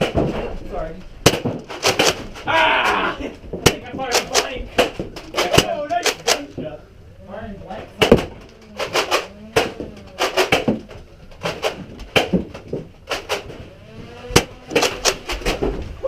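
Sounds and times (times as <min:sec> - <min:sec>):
foam dart blasters firing: 0:08.0 - 0:15.7.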